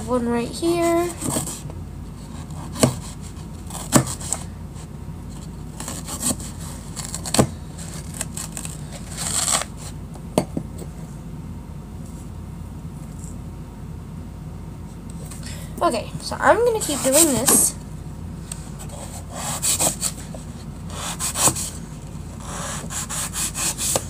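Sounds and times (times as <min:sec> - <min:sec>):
knife rasping through foam: 0:05.7 - 0:10.0, 0:18.8 - 0:20.3, 0:20.9 - 0:21.8, 0:22.4 - 0:24.0.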